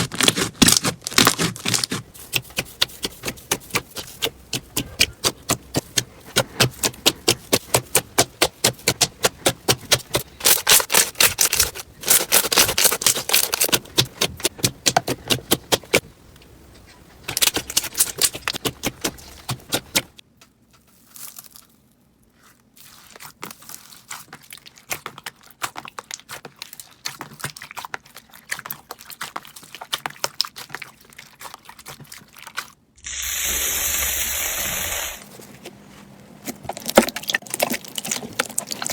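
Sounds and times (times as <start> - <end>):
slime crackling and popping: 6.6 - 16.0
loud steady hiss: 33.0 - 35.2.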